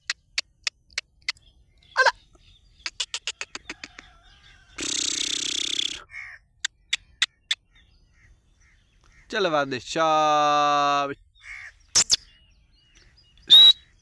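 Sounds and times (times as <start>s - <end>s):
bird harsh grating call: 1.0s - 9.3s, 11.4s - 12.3s.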